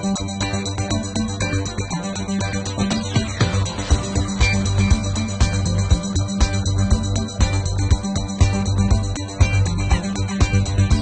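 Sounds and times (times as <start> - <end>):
electronic music with beat and bass: 0.0 - 11.0.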